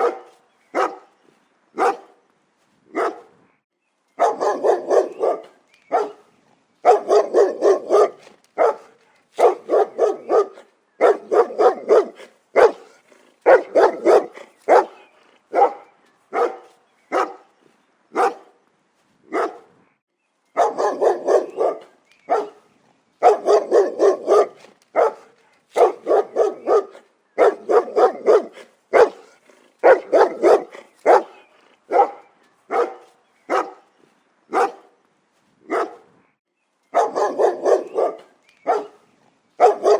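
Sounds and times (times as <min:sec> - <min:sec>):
dog barking: 0:00.0 - 0:01.1, 0:01.8 - 0:02.2, 0:02.9 - 0:03.4, 0:04.2 - 0:17.5, 0:18.1 - 0:18.6, 0:19.3 - 0:19.7, 0:20.6 - 0:33.9, 0:34.5 - 0:35.0, 0:35.7 - 0:36.1, 0:36.9 - 0:39.0, 0:39.6 - 0:39.9.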